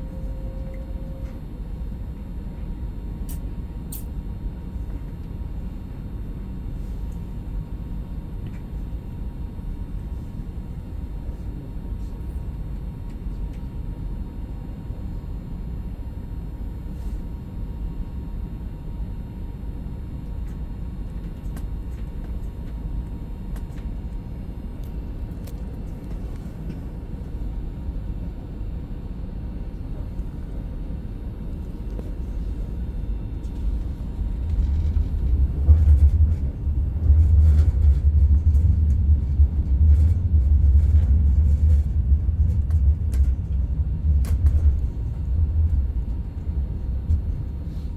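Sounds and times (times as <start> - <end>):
train rumbling: 0.0 - 4.0, 29.8 - 47.9.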